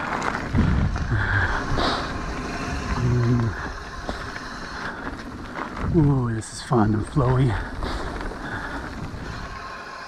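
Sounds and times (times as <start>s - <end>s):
bike tyre noise: 0.0s - 10.0s
wind rushing over microphone: 0.4s - 10.0s.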